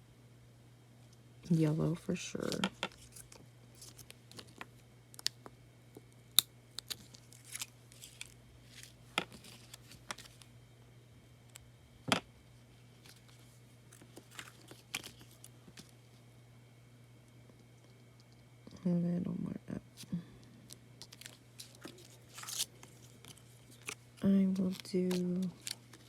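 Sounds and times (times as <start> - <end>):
faint low hum: 0.0 - 26.0
paper rustling: 2.5 - 4.7, 6.9 - 10.5, 13.0 - 16.0, 21.0 - 26.0
paper being handled and cut: 6.8 - 10.4, 21.0 - 26.0.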